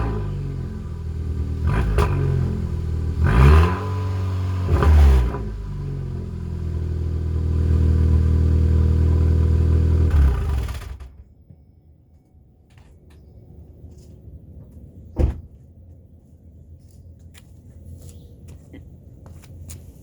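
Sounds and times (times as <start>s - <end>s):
car engine idling: 0.0s - 3.4s, 5.5s - 11.2s
car engine revving: 0.0s - 11.1s.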